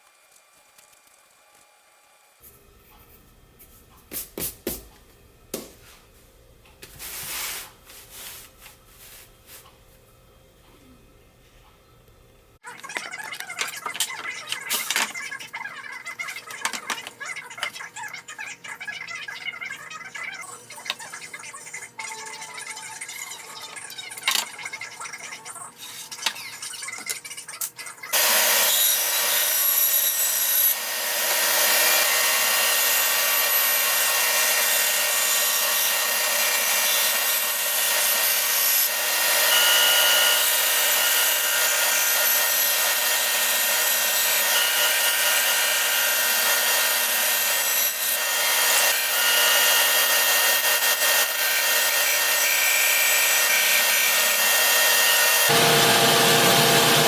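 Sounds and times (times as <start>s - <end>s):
band saw cutting wood: 28.2s - 57.0s.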